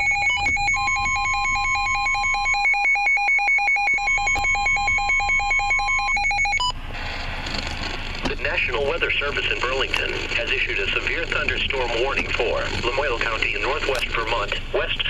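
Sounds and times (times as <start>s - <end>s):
warbling alert alarm: 0.0s - 6.7s
steady warning tone: 0.0s - 6.8s.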